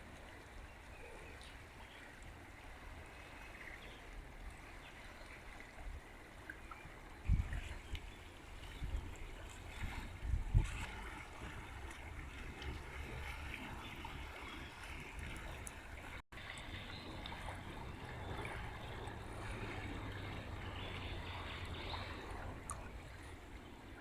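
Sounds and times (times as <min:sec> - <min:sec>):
river water rushing: 0:11.0 - 0:24.0.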